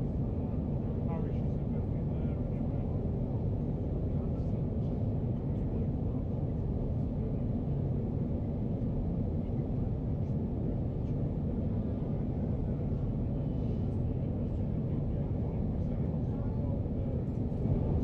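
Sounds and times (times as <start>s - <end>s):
aircraft engine rumble in cabin: 0.0s - 18.0s.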